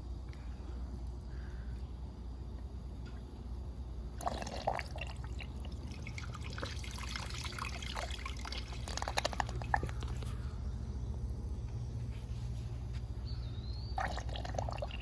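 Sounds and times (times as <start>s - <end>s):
steady low hum: 0.0s - 15.0s
toy toilet water splashing: 4.2s - 10.1s.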